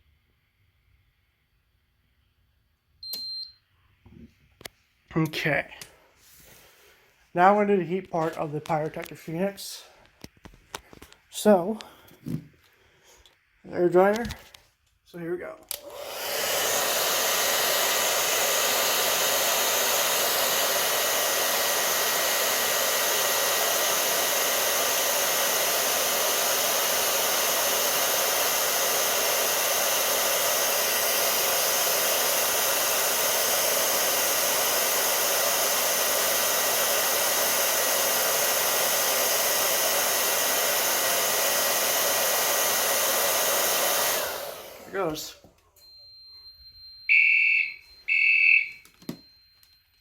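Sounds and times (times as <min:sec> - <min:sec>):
hair dryer running: 0:15.2 - 0:45.6, 0:47.1 - 0:49.8.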